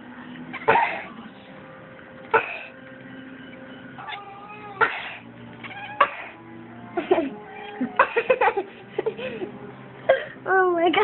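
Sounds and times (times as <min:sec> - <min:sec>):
faint music: 0:00.0 - 0:11.0
person coughing: 0:00.6 - 0:01.2, 0:02.3 - 0:02.7, 0:04.8 - 0:05.2, 0:06.0 - 0:06.4, 0:08.0 - 0:08.6.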